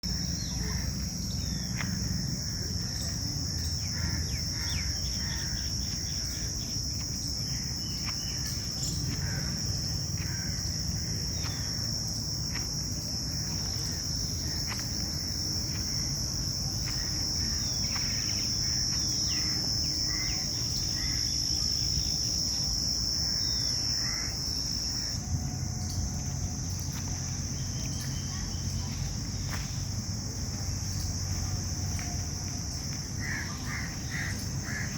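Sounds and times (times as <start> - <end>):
high-pitched insect drone: 0.0 - 34.9.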